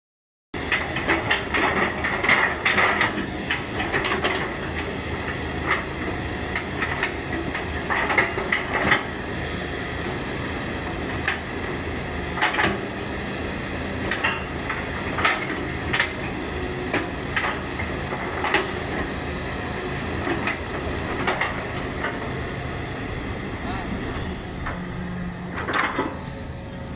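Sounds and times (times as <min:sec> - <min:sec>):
excavator diesel engine running: 0:00.6 - 0:26.9
metallic clanks and knocks: 0:20.2 - 0:22.2, 0:25.5 - 0:26.2.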